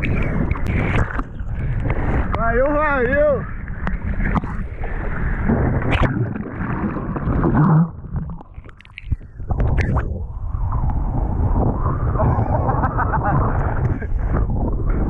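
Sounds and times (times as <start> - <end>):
seawater splashing: 0.6 - 9.4
wind buffeting: 9.1 - 15.0.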